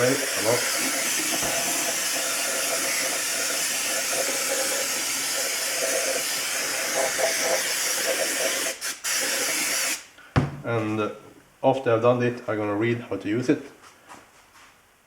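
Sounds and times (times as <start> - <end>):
aerosol can spraying hiss: 0.5 - 10.0.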